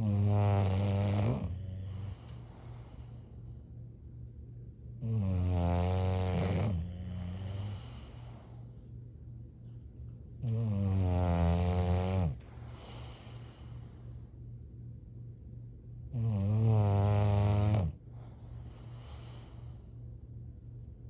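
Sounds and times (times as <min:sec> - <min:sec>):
dog snoring: 0:00.0 - 0:03.3, 0:05.0 - 0:08.7, 0:10.4 - 0:13.8, 0:16.1 - 0:19.9.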